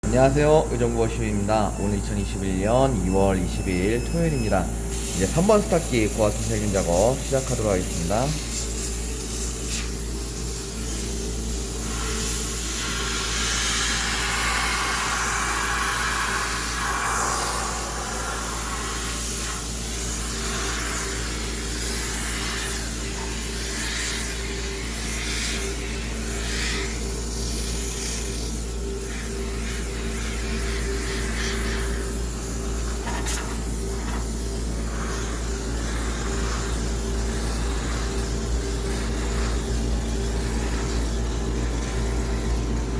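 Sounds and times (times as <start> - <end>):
steady machine hum: 0.0 - 42.9
hissing steam: 3.3 - 9.0, 10.8 - 38.3.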